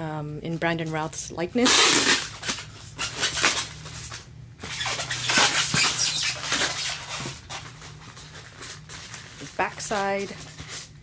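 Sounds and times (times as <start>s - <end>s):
plastic bag and paper crinkling: 2.2s - 11.0s.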